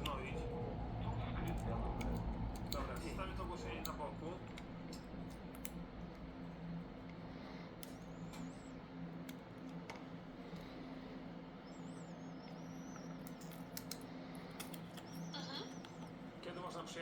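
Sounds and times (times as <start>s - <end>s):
low electrical hum: 0.0s - 17.0s
keyboard and mouse clicks: 1.4s - 6.3s, 12.4s - 15.3s.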